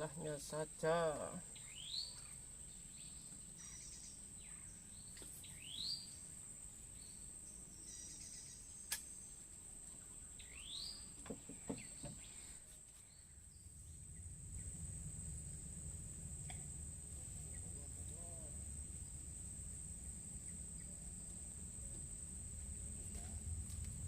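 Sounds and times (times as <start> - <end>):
sharp click: 8.9 - 9.1.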